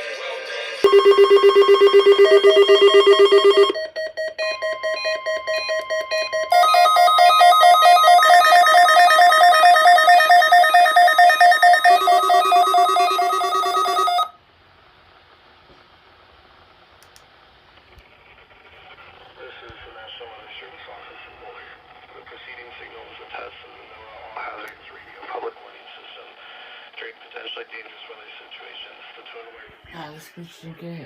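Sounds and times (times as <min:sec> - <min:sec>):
pulsing synthesized ringtone tune: 0:00.8 - 0:14.3.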